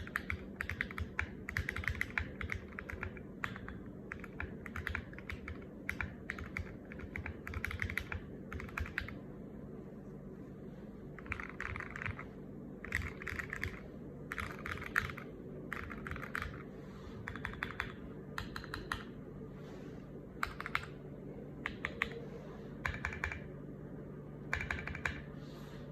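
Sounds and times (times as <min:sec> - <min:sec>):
mechanical keyboard typing: 0:00.0 - 0:09.2, 0:11.2 - 0:19.1, 0:20.4 - 0:21.0, 0:21.6 - 0:22.2, 0:22.8 - 0:23.5, 0:24.5 - 0:25.3.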